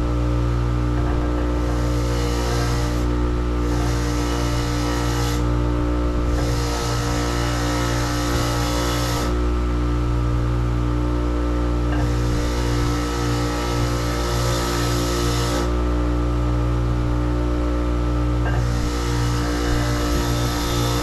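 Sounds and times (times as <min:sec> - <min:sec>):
motor humming: 0:18.4 - 0:21.0.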